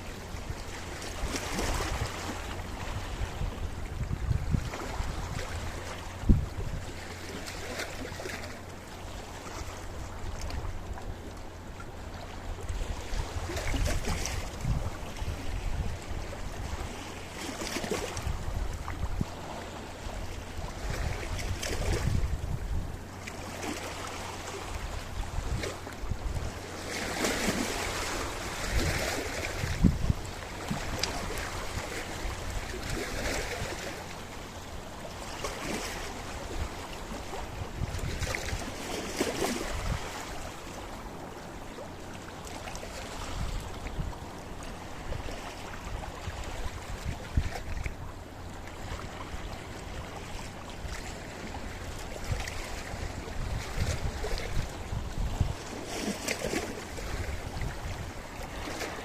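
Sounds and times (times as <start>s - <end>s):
waves breaking on rocks: 20.8s - 34.2s.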